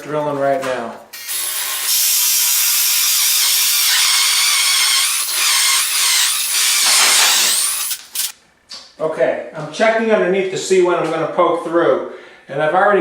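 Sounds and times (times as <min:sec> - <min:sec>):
power drill cutting into wood: 0:01.2 - 0:08.4.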